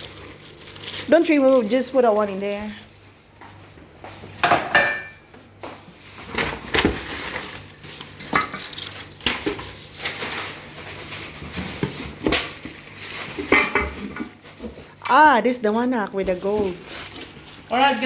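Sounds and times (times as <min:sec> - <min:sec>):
metal pots and lids clanking: 0:04.4 - 0:05.2, 0:08.1 - 0:10.4, 0:13.2 - 0:15.2.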